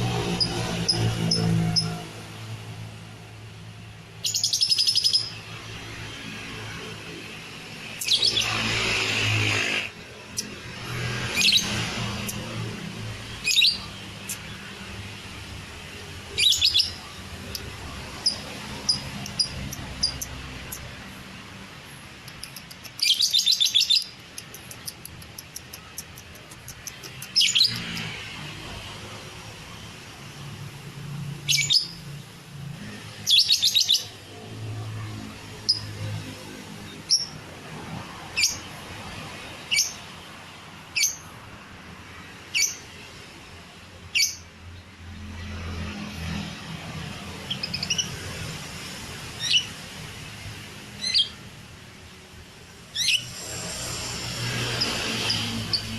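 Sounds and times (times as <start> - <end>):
lovebird chattering trills: 4.2 - 5.4, 16.4 - 20.8
lovebird sharp chirps: 4.2 - 5.4, 13.4 - 14.6, 16.3 - 20.8, 22.2 - 28.1, 53.0 - 53.4.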